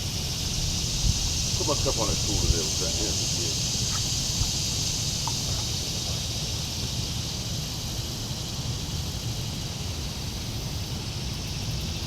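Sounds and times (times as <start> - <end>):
wind rumble on microphone: 0.0 - 6.1
high insect hiss: 0.0 - 12.0.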